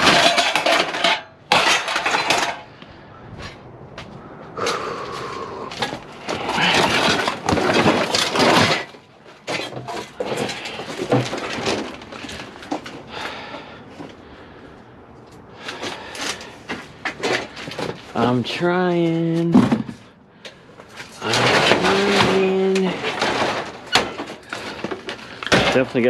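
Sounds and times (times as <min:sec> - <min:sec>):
scrap knocks and clinks: 0:00.0 - 0:02.7, 0:05.7 - 0:13.0
scrap rattling and scraping: 0:00.0 - 0:14.6, 0:15.2 - 0:26.0.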